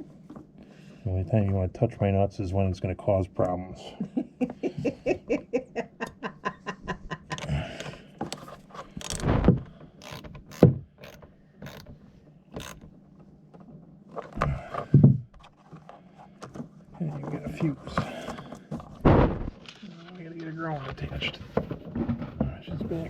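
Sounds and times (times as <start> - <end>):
hand wrench ratcheting: 9.0 - 9.3, 10.0 - 11.9, 12.6 - 12.8.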